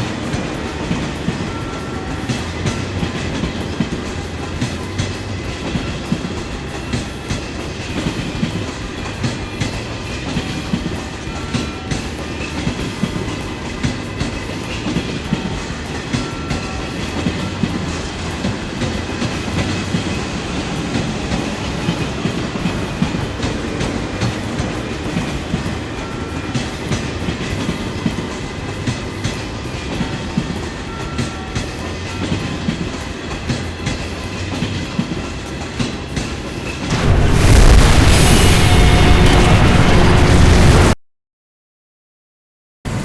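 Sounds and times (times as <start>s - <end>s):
train wheels clattering: 0.0s - 37.0s
train rumble: 0.0s - 41.0s
loud sudden sound: 36.9s - 41.0s.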